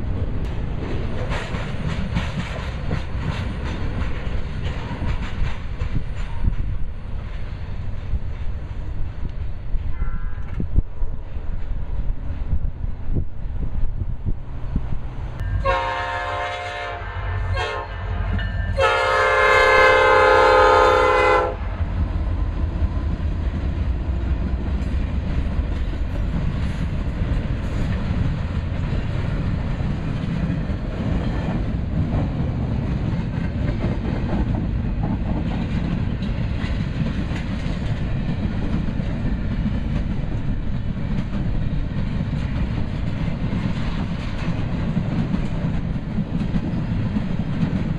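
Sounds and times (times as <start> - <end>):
train cars rumbling and clacking past: 0.0 - 47.9
locomotive air horn blasts: 15.5 - 21.8.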